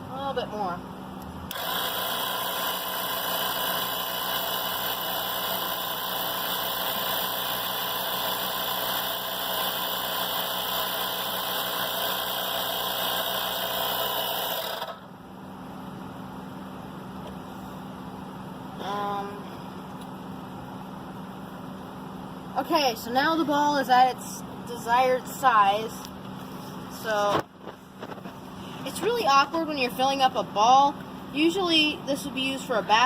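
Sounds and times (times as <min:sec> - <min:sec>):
tire inflator running: 0:01.4 - 0:23.8
car engine idling: 0:14.9 - 0:33.0.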